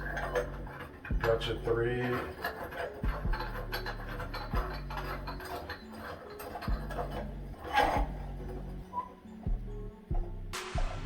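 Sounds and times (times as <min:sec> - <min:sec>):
music with bass beat: 0:01.1 - 0:01.6, 0:03.0 - 0:03.8, 0:04.4 - 0:05.3, 0:06.7 - 0:11.0.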